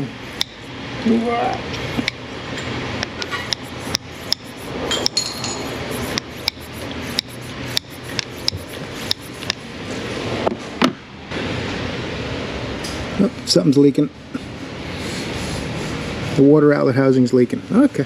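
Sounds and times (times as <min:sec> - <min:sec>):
hand pump strokes: 0:00.0 - 0:00.7, 0:03.0 - 0:09.6
sharp clicks: 0:00.4 - 0:00.6, 0:01.7 - 0:02.2, 0:03.0 - 0:05.2, 0:06.0 - 0:09.6.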